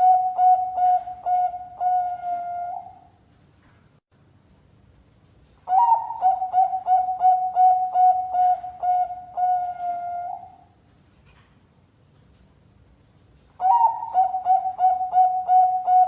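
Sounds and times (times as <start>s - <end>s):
dove cooing: 0.0s - 3.1s, 5.7s - 10.7s, 13.6s - 16.0s.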